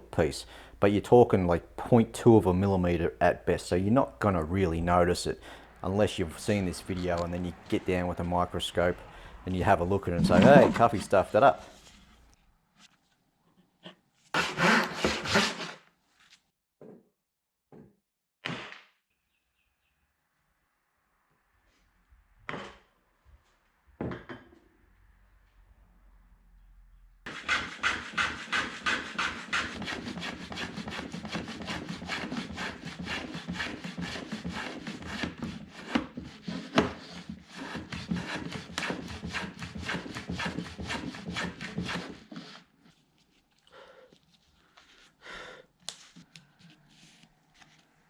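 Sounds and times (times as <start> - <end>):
hand saw cutting wood: 6.4 - 11.9, 14.4 - 15.8, 27.3 - 42.7.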